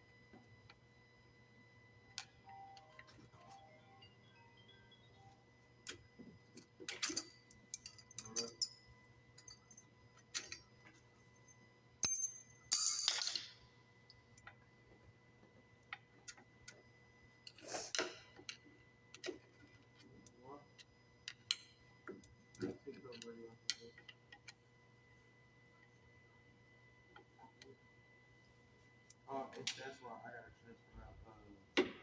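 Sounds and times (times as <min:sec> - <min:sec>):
metal tools clinking: 0:06.9 - 0:08.8.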